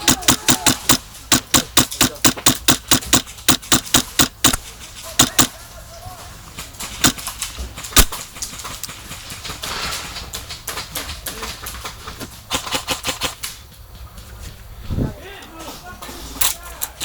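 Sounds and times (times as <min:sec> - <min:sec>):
airsoft full-auto burst: 0:00.0 - 0:04.6, 0:05.2 - 0:05.6, 0:07.0 - 0:07.3, 0:12.5 - 0:13.4
airsoft gun shots clacking: 0:00.0 - 0:04.6, 0:05.2 - 0:05.6, 0:07.0 - 0:07.3.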